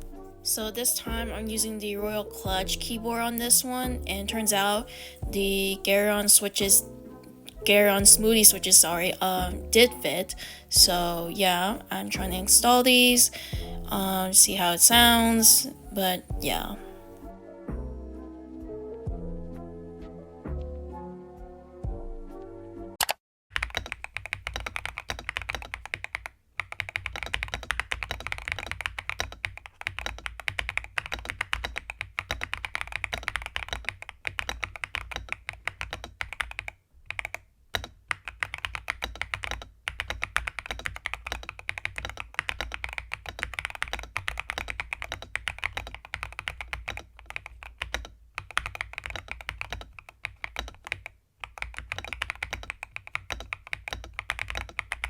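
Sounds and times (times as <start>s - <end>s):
fast typing on mechanical keyboard: 23.0s - 55.0s.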